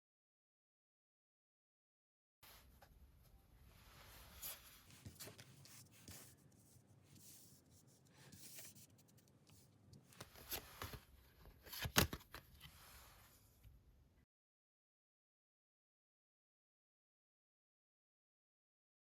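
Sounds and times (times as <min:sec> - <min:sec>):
cards rustling and tapping: 0:08.4 - 0:12.7.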